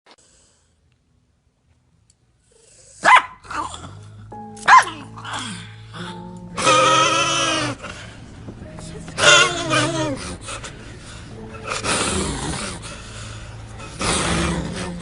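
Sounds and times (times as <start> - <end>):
dog barking: 3.0 - 3.5, 4.7 - 5.0
dog yelping: 3.0 - 3.7, 4.6 - 5.4, 6.6 - 7.9, 9.2 - 10.5
music with sustained notes: 3.4 - 15.0.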